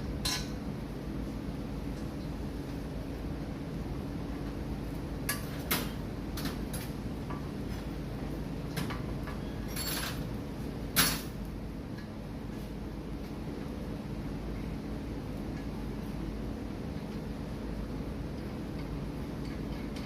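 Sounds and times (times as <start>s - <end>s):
steady low hum: 0.0s - 20.0s
metal clinks and knocks of tools: 9.6s - 10.2s.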